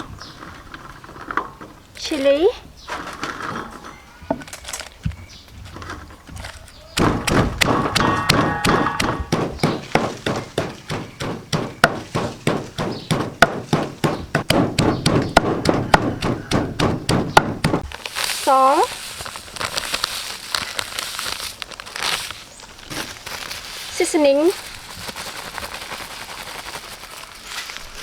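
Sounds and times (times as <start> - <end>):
rhythmic thunks of strikes: 7.0 - 17.9.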